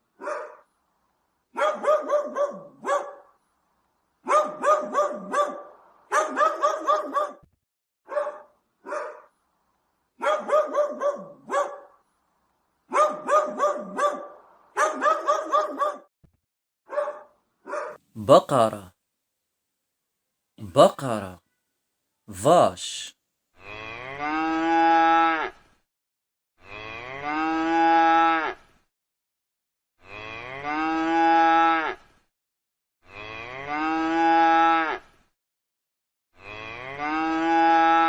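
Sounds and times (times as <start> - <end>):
dog barking: 0.2 - 0.6, 1.6 - 3.3, 4.2 - 7.4, 8.1 - 9.3, 10.2 - 12.0, 12.9 - 16.1, 16.9 - 18.0.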